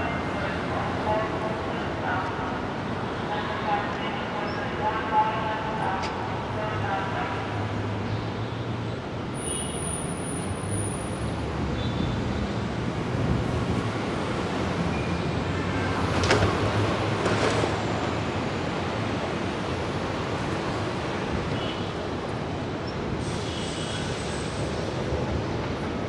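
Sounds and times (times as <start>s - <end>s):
train rumble: 10.3s - 26.0s.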